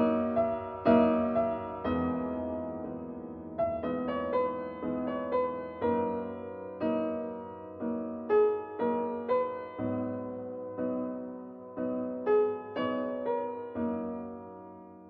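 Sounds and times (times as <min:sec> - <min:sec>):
slow piano music: 0:00.0 - 0:15.0.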